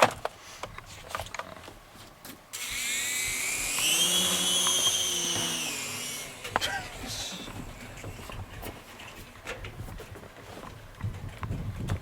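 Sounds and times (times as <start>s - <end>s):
toy helicopter motor whine: 2.6s - 8.4s.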